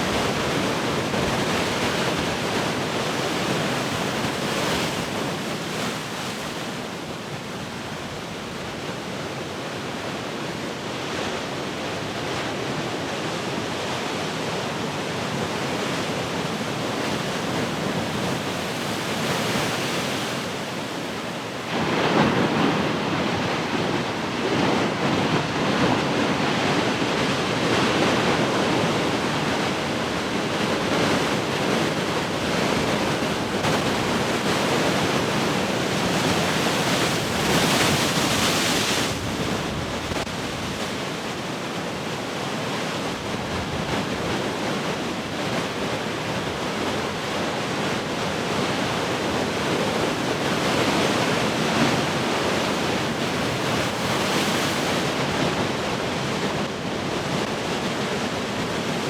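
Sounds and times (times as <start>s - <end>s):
wind: 0.0s - 59.0s
ocean waves crashing: 29.0s - 44.4s.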